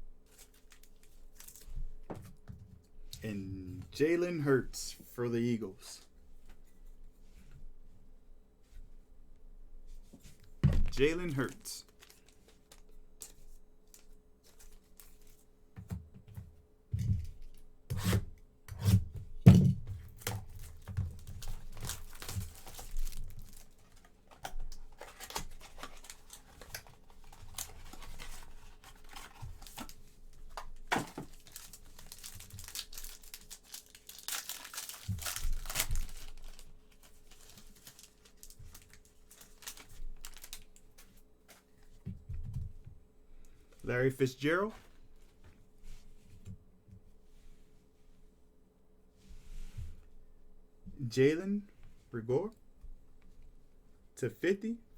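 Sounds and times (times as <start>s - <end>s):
wrappers tearing and crinkling: 0.3s - 1.7s, 11.0s - 15.3s, 20.4s - 41.0s
cards rustling and tapping: 20.2s - 42.0s.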